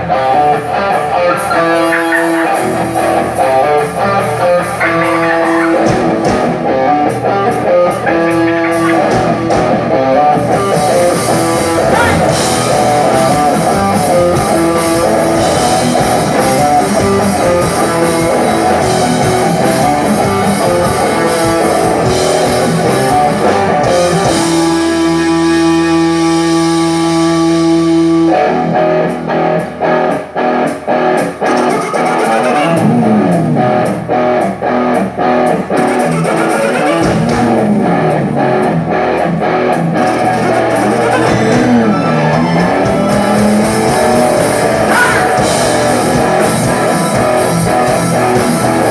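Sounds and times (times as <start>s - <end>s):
electric guitar: 0.0s - 48.9s
live rock band playing: 0.0s - 48.9s.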